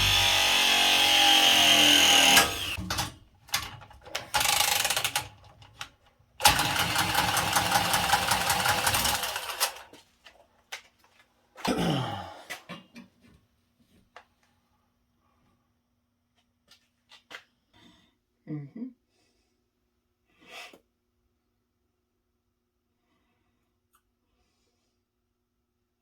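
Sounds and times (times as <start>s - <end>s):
power tool motor running: 0.0s - 2.8s, 4.4s - 5.1s, 6.4s - 9.9s.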